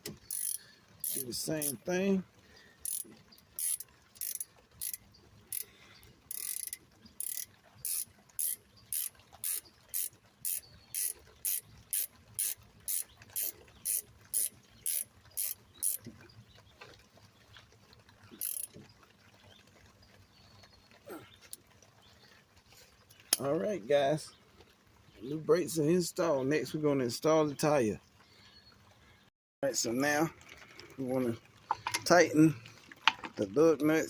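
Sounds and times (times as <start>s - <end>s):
hand ratchet clicking: 0.0s - 1.8s, 2.8s - 5.6s, 6.3s - 16.0s, 18.4s - 18.7s.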